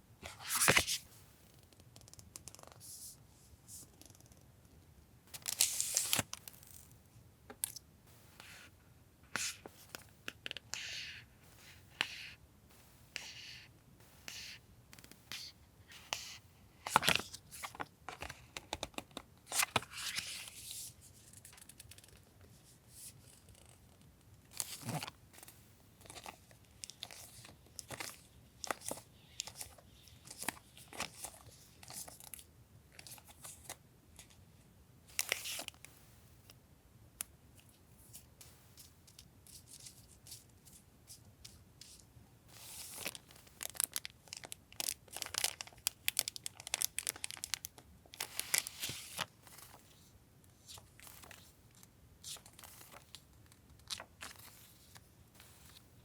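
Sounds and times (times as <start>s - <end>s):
paper and plastic wrappers rustling: 42.6s - 49.8s.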